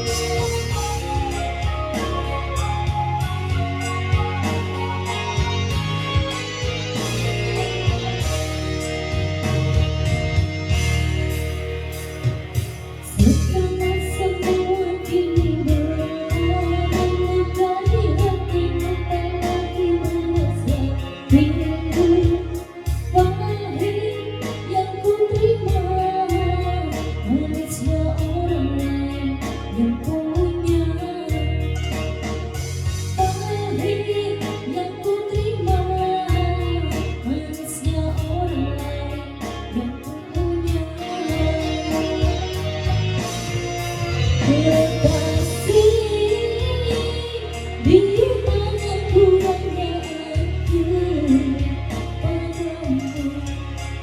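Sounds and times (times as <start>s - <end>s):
guitar and bass backing music: 0.0s - 54.0s
woman singing: 13.0s - 32.0s, 33.2s - 54.0s.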